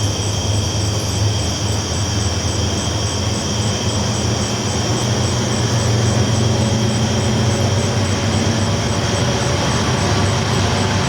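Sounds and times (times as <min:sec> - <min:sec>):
train rumbling on tracks: 0:00.0 - 0:11.0.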